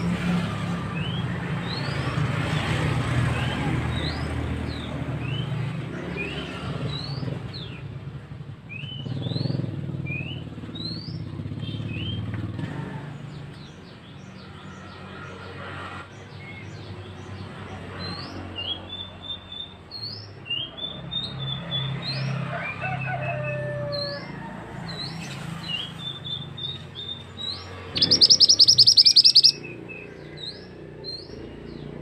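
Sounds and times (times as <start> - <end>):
bird chirping: 24.9 - 32.0.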